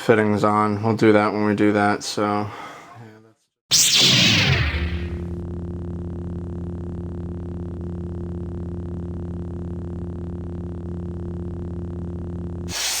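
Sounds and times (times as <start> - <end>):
electronic drone: 3.7 - 5.4.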